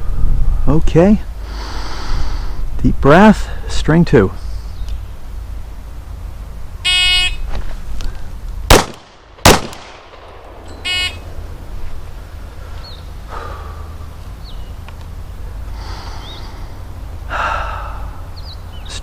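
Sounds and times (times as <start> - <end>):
pistol shots: 8.7 - 10.6.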